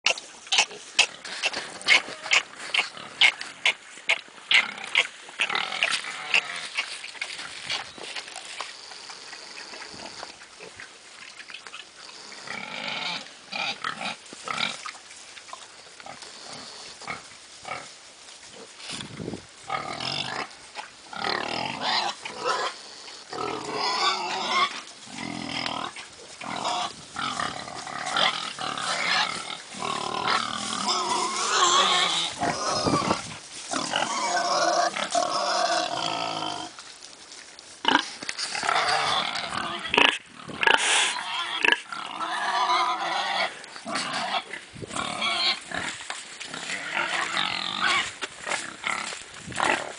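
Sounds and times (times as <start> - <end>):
piglets squealing and grunting: 0.0 - 7.9, 12.2 - 14.8, 19.7 - 36.8, 37.9 - 49.9.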